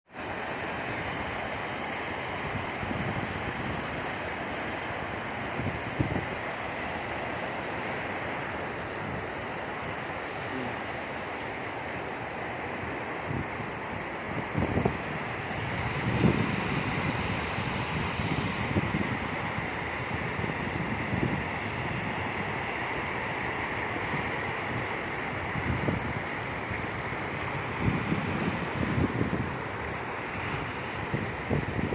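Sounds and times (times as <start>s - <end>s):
sea waves breaking on shore: 0.1s - 31.9s
wind buffeting microphone: 5.5s - 6.4s, 13.2s - 22.6s, 24.6s - 31.9s.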